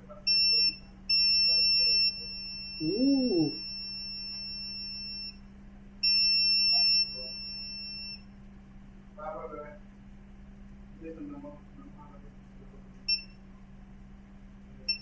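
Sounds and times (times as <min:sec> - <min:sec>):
multimeter continuity beep: 0:00.0 - 0:08.4, 0:13.0 - 0:13.5, 0:14.8 - 0:15.0.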